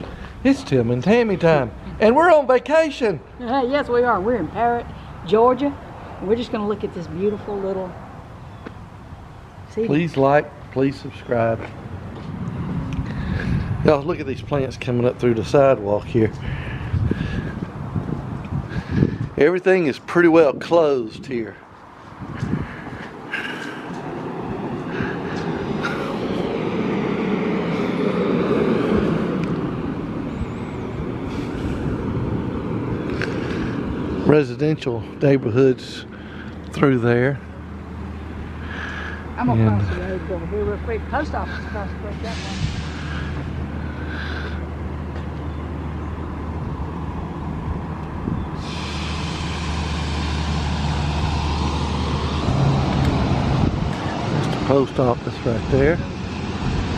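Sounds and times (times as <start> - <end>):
vehicle passing by: 0.0 - 19.6, 21.5 - 56.9
tyre hiss: 48.6 - 50.8.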